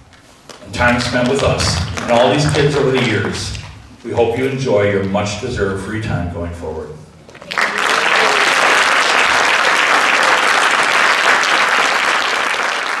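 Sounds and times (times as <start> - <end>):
crowd applauding: 0.5 - 3.8, 7.3 - 13.0.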